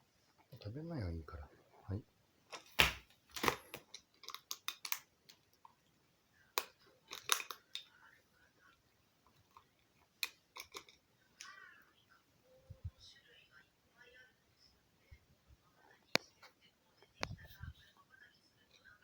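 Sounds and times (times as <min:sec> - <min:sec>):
crow beak clicking and pecking: 0:02.8 - 0:05.6.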